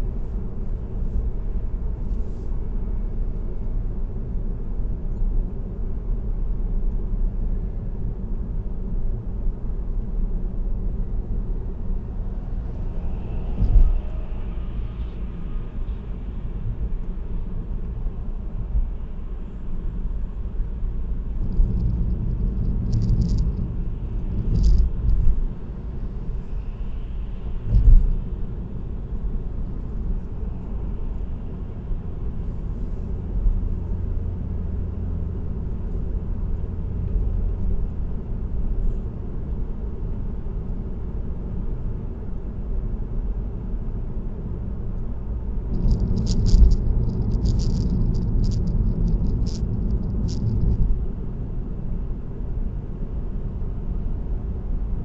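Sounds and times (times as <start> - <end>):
tyre and road noise: 9.9 - 40.4, 44.1 - 54.7.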